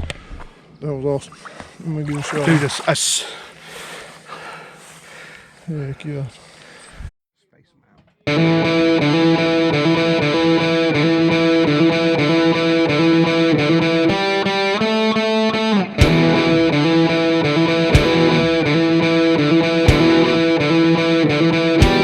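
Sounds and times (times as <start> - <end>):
distorted electric guitar: 8.3 - 22.0
drums: 16.0 - 16.5, 17.9 - 18.6, 19.9 - 20.5, 21.8 - 22.0.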